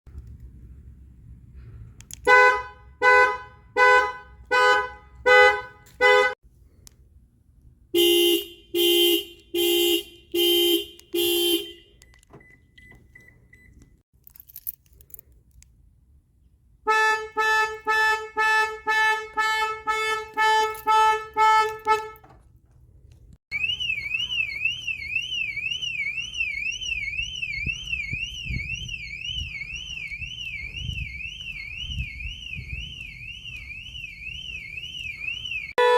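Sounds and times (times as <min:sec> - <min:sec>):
car alarm honks: 0:02.3 - 0:06.4, 0:08.0 - 0:13.8, 0:16.9 - 0:22.3, 0:23.5 - 0:35.9
car alarm beeping: 0:08.0 - 0:14.0, 0:16.9 - 0:22.3, 0:23.5 - 0:35.9
car alarm warbling wail: 0:23.5 - 0:35.9.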